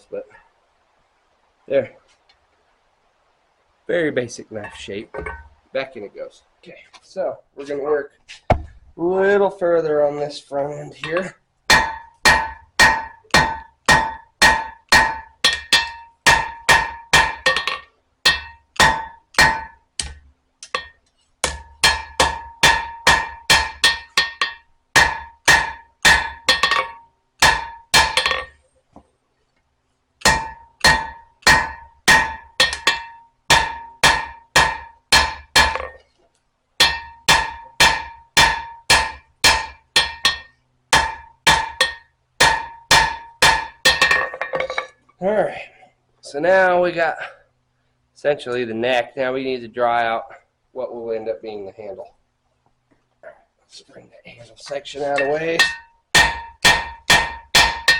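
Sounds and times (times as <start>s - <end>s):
hammer ringing on anvil: 36.8s - 44.2s, 55.2s - 57.9s.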